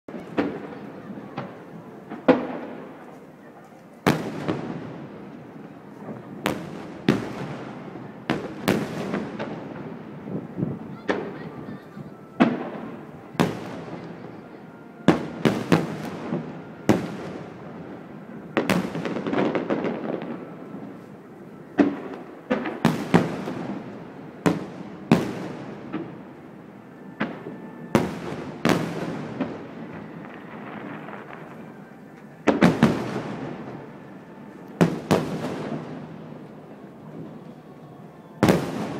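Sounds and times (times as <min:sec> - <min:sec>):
fireworks bangs: 0:00.1 - 0:38.9.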